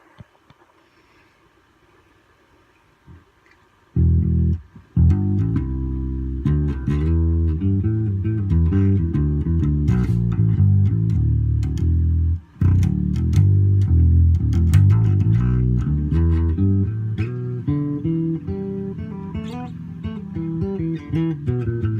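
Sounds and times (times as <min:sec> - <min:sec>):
electric bass plucked notes: 0:04.0 - 0:21.9.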